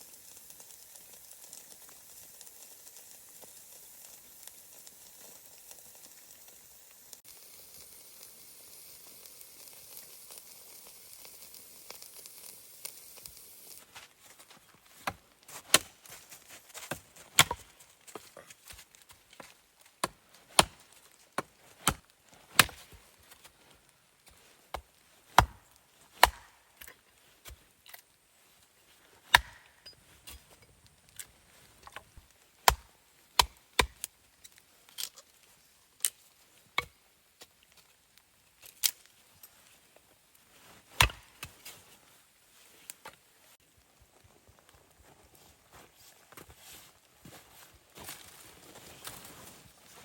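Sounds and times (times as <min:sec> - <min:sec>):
axe chopping wood: 0:15.0 - 0:15.9, 0:16.8 - 0:17.7, 0:20.0 - 0:20.8, 0:21.4 - 0:23.0, 0:24.7 - 0:26.6, 0:29.3 - 0:29.8, 0:32.6 - 0:34.0, 0:41.0 - 0:41.6.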